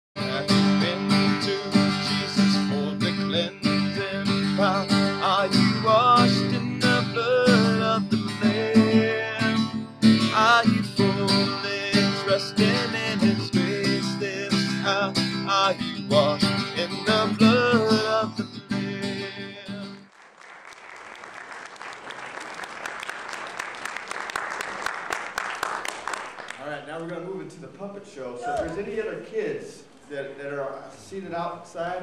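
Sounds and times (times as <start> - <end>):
person singing: 0.2 - 20.0
strummed acoustic guitar: 0.2 - 20.0.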